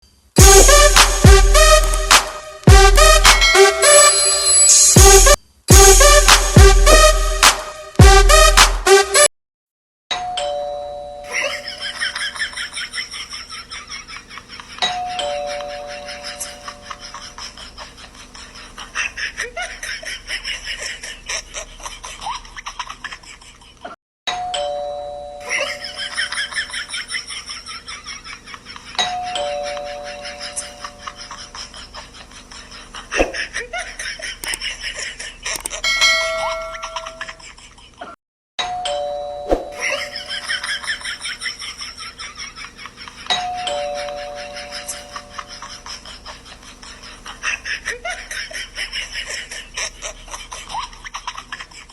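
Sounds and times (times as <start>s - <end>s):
sharp clicks: 1.8s - 2.2s, 34.4s - 34.6s, 35.5s - 35.8s
electronic doorbell chime: 3.3s - 4.9s, 10.1s - 12.0s, 15.0s - 16.9s, 24.3s - 26.1s, 35.8s - 37.3s, 38.6s - 40.4s, 43.4s - 45.4s.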